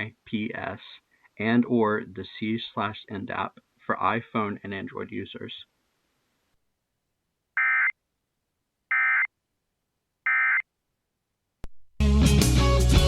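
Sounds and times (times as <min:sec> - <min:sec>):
music: 0:12.0 - 0:13.0.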